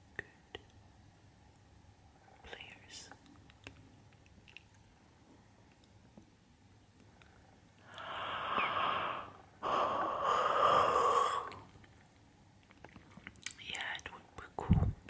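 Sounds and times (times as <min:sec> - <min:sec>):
person breathing close to microphone: 0:07.8 - 0:11.7.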